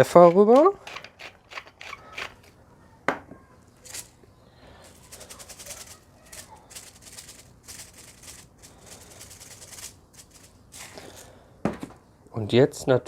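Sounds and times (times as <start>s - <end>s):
pepper mill grinding: 0.0s - 2.5s, 3.8s - 11.3s.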